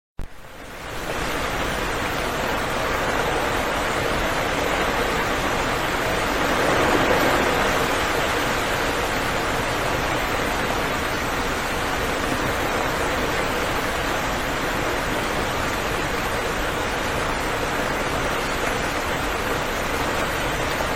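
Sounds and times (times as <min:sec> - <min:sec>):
heavy rain hissing: 0:00.4 - 0:20.9.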